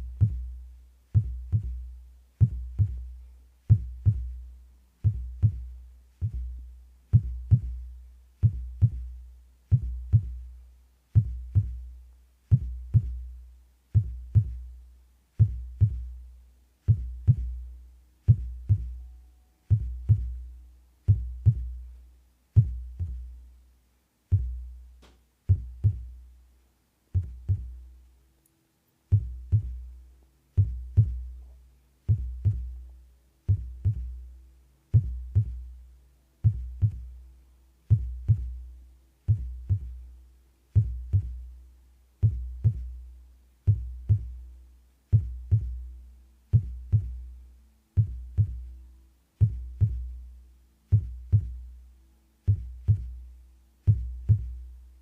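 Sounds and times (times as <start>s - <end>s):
amplified heartbeat: 0.0s - 4.4s, 5.0s - 10.5s, 11.1s - 11.9s, 12.5s - 14.8s, 15.4s - 16.2s, 16.8s - 17.7s, 18.3s - 19.1s, 19.7s - 20.5s, 21.1s - 21.9s, 22.6s - 23.4s, 24.3s - 24.7s, 25.5s - 26.2s, 27.1s - 27.8s, 29.1s - 29.9s, 30.6s - 32.9s, 33.5s - 34.3s, 34.9s - 35.8s, 36.4s - 37.2s, 37.9s - 38.7s, 39.3s - 40.1s, 40.8s - 41.5s, 42.2s - 43.0s, 43.7s - 44.4s, 45.1s - 45.9s, 46.5s - 47.4s, 48.0s - 48.8s, 49.4s - 50.2s, 50.9s - 51.8s, 52.5s - 54.7s.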